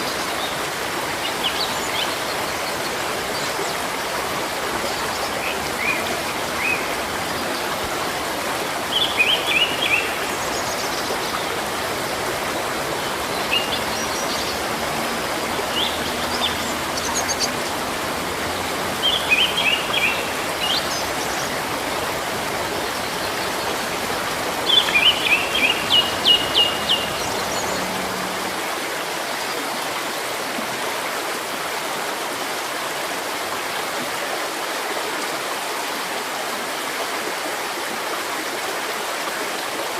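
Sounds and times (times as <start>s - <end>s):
stream water rushing: 0.0s - 39.9s
songbird chirping: 8.9s - 28.7s.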